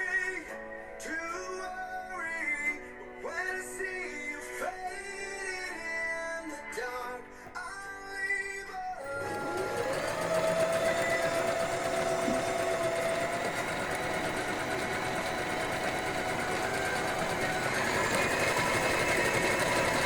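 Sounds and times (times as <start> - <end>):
sewing machine running: 9.0 - 20.0.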